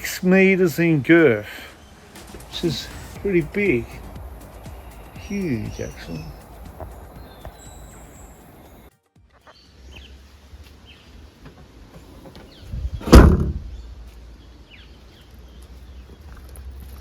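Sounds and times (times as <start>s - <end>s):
car door shutting: 11.5s - 13.7s.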